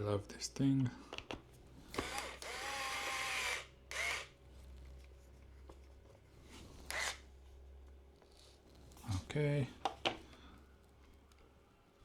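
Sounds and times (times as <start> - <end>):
electric screwdriver motor whirring: 2.0 - 4.3, 6.9 - 7.2.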